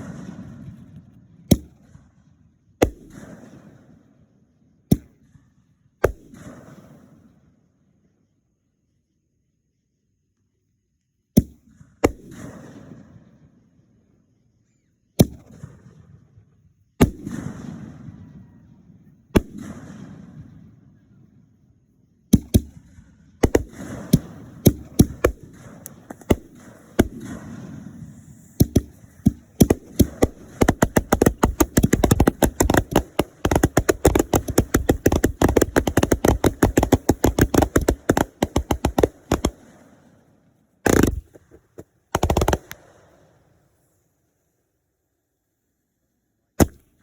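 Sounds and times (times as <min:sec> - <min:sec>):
fireworks bangs with crackling: 0:17.0 - 0:18.7, 0:19.3 - 0:20.8, 0:22.4 - 0:43.9
short bursts of noise: 0:40.8 - 0:42.9.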